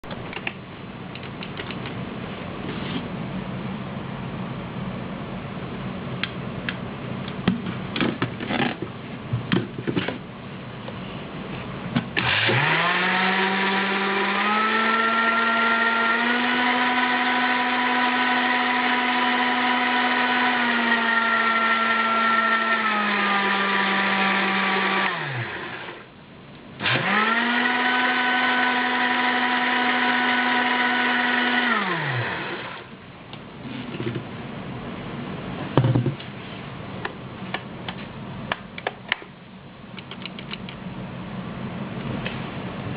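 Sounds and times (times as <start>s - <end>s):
electric blender motor whining: 12.2s - 26.1s, 26.8s - 32.9s.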